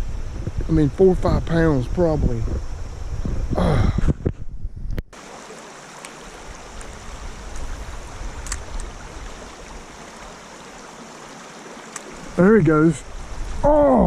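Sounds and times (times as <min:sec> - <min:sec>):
river water rushing: 0:05.2 - 0:14.0
faint ticks: 0:06.0 - 0:07.7, 0:08.4 - 0:09.0, 0:11.8 - 0:12.2.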